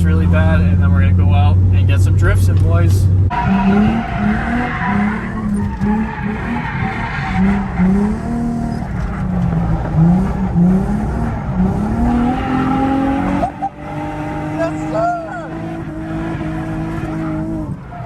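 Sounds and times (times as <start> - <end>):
car engine revving: 0.0 - 18.0
tyres squealing: 3.3 - 10.1, 11.6 - 18.0.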